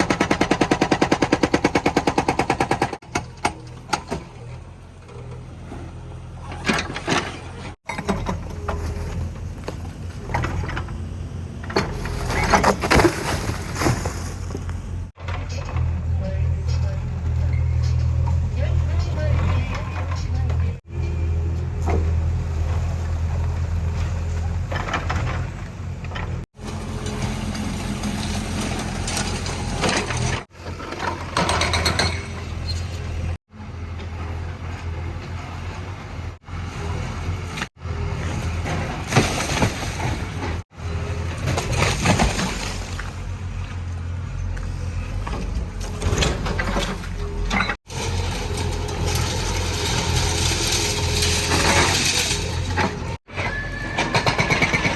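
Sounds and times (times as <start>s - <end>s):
diesel engine running: 0.0s - 31.6s, 32.2s - 53.2s
digging and breaking noise: 37.7s - 43.2s, 45.2s - 53.4s.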